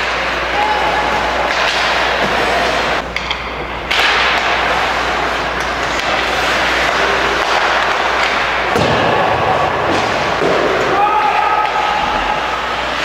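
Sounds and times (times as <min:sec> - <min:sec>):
ice hockey rink noise: 0:00.0 - 0:13.0
sticks and puck knocking: 0:01.5 - 0:09.0
thud against the boards: 0:08.7 - 0:09.2.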